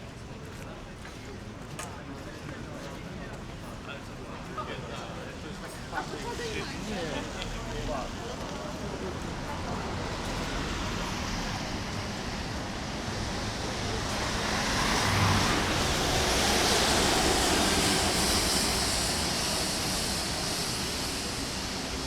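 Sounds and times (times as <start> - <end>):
tyres hissing on wet road: 5.9 - 22.0.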